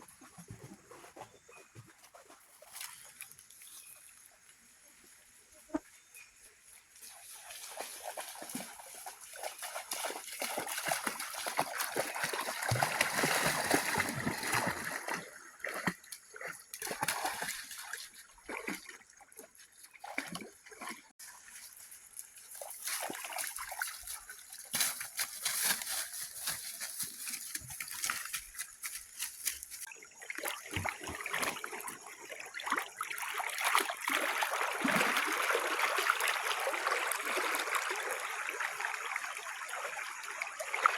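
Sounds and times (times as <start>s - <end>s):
water splashing from swimming: 7.3s - 40.9s.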